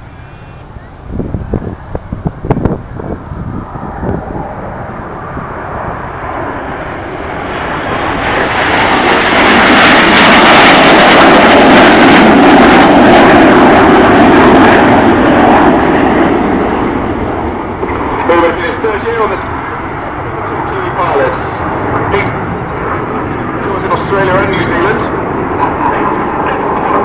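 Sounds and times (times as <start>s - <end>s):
jets flying past: 0.0s - 27.0s.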